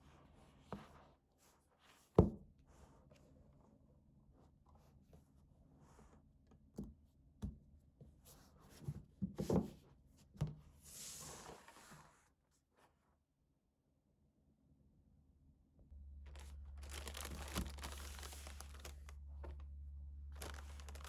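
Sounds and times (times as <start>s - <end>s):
packaging rustling: 16.3s - 19.7s, 20.3s - 21.0s.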